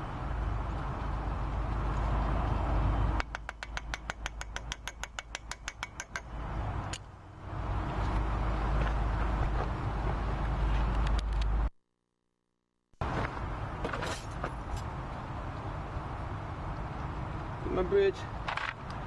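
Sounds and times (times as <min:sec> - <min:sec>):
grease cap tapped onto wheel hub: 0:03.2 - 0:06.3.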